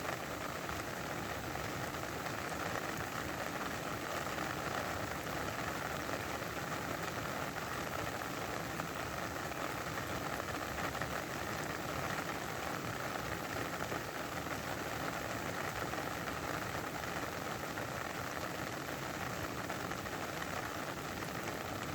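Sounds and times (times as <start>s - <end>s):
steady rain patter: 0.0s - 21.9s.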